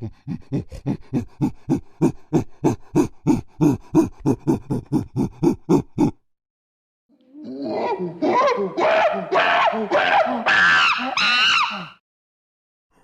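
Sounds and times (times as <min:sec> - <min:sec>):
monkey calling rapidly: 0:08.2 - 0:12.0.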